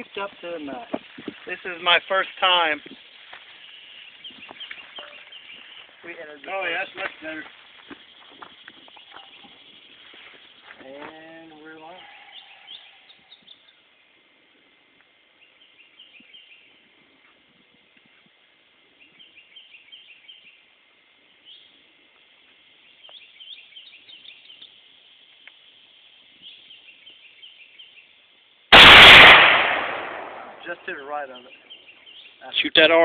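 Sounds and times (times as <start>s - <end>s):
faint bird chirps: 2.8s - 6.1s, 7.6s - 14.2s, 15.3s - 17.4s, 18.9s - 28.4s
loud rifle shot: 28.7s - 30.8s.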